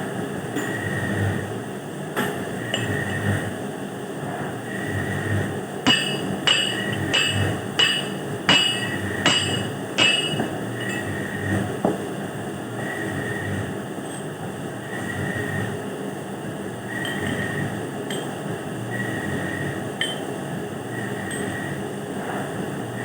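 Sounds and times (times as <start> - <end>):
hammer striking metal: 5.9 - 11.2.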